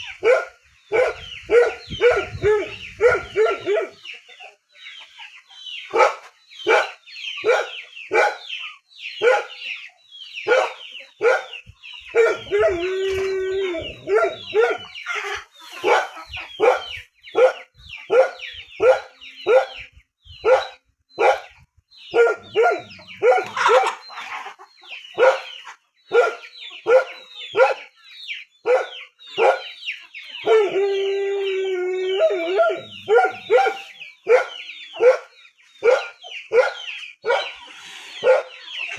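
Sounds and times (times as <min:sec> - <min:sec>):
dog barking: 0:00.2 - 0:04.0, 0:05.9 - 0:08.6, 0:09.2 - 0:09.6, 0:10.4 - 0:12.8, 0:14.0 - 0:15.0, 0:15.8 - 0:24.0, 0:25.2 - 0:27.9, 0:28.6 - 0:29.8, 0:32.5 - 0:37.6, 0:38.2 - 0:38.6.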